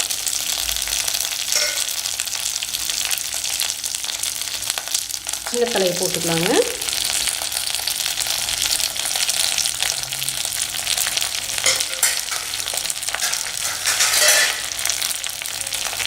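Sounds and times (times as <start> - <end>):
leaves sizzling in oil: 0.0 - 16.0
spatula stirring and scraping: 11.6 - 14.9.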